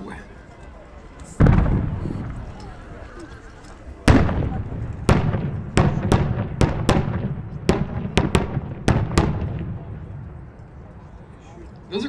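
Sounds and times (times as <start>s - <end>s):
firework bangs with echo: 1.4s - 3.1s, 4.1s - 10.7s.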